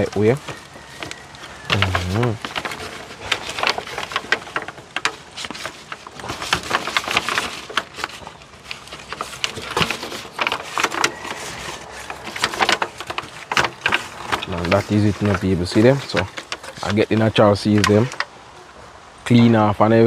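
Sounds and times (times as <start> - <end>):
aluminium foil pan crinkling: 0.0 - 18.4.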